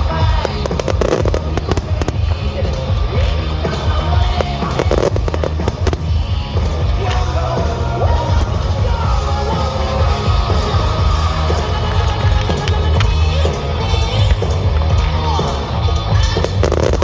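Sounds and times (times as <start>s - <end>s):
crackling firework shells: 0.0s - 15.6s, 16.4s - 17.0s
loud music with heavy bass: 0.0s - 17.0s
firework bangs: 0.3s - 7.3s, 16.4s - 17.0s.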